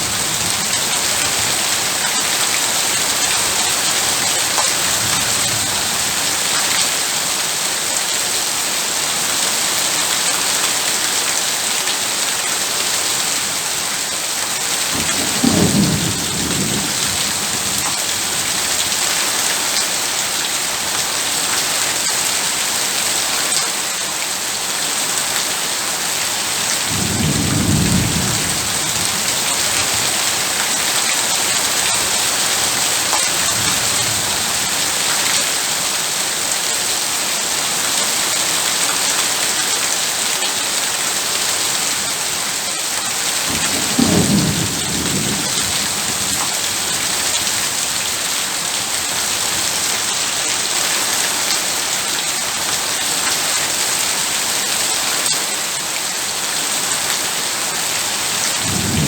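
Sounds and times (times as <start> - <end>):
heavy rain: 0.0 - 59.0
thunder rumbling: 15.0 - 18.8, 26.8 - 30.4, 43.5 - 47.8, 58.6 - 59.0.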